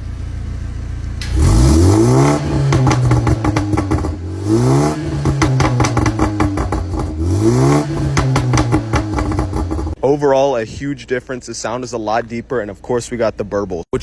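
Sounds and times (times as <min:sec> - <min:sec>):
car engine revving: 0:01.2 - 0:10.0
exhaust pops and crackles: 0:02.2 - 0:10.0.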